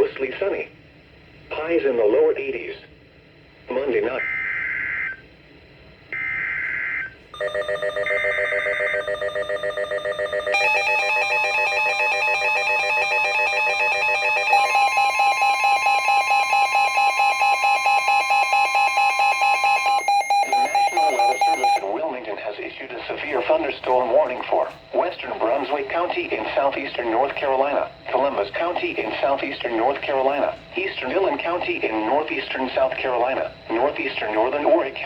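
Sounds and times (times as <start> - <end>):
steady warning tone: 0.0 - 35.0
fast-pulsing electronic alarm: 3.7 - 5.3, 6.1 - 22.2
screechy data bursts: 8.2 - 22.0.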